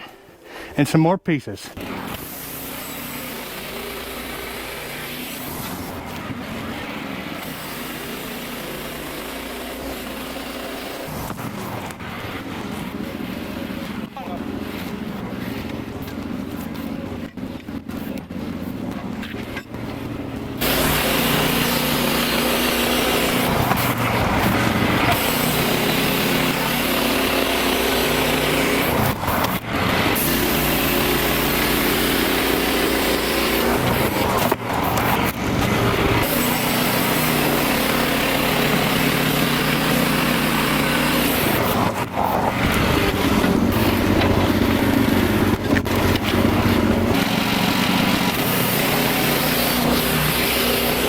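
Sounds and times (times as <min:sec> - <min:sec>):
sawmill engine running: 0:00.9 - 0:51.0
band saw cutting log: 0:20.6 - 0:51.0.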